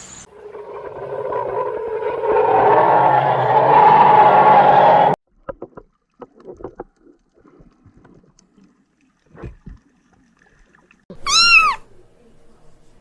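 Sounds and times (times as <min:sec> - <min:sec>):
cat meowing: 0:11.1 - 0:11.8.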